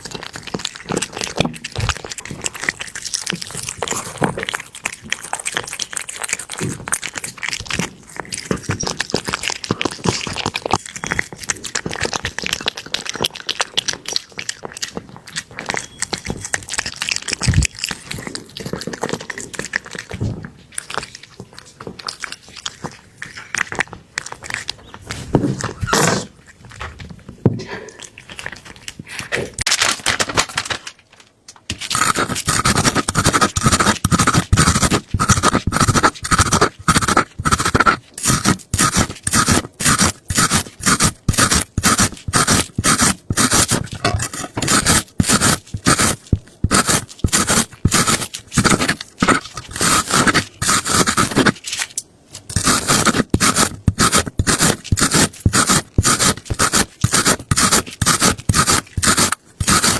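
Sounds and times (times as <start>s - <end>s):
rhythmic scraping strokes: 31.9s - 51.6s, 52.5s - 59.9s.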